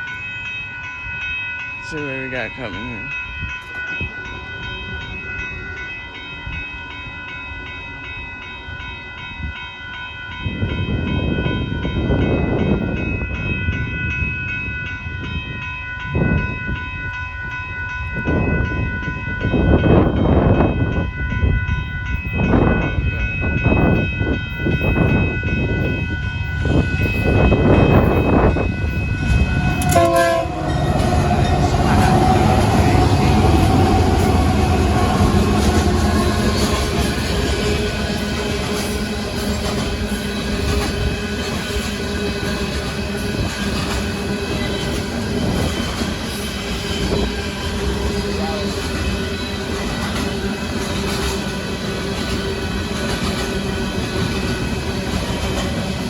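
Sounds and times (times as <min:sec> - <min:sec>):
passing train rumble: 0:00.0 - 0:56.0
locomotive air horn chord: 0:28.9 - 0:38.9.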